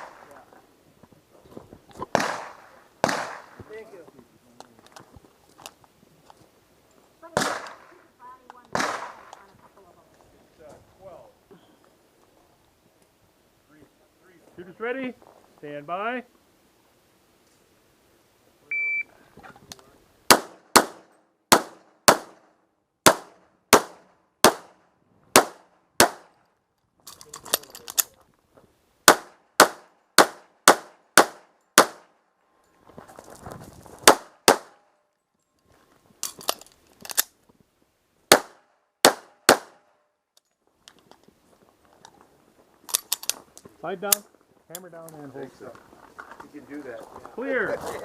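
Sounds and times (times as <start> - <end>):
pistol shots: 2.1 - 3.6, 7.4 - 7.9, 8.7 - 9.3, 20.3 - 26.3, 29.1 - 32.1, 34.0 - 34.8, 38.3 - 39.8
shot timer beep: 18.7 - 19.1.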